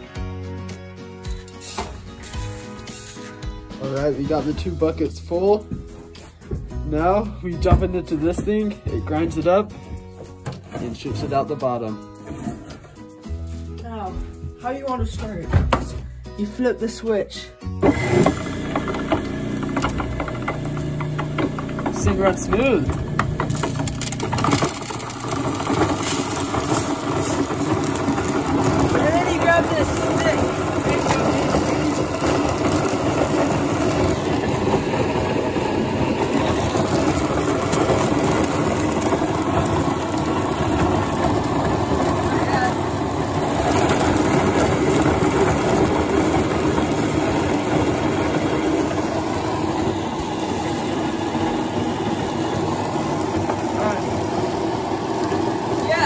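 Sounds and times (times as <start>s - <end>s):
grain grinder motor humming: 17.7s - 56.0s.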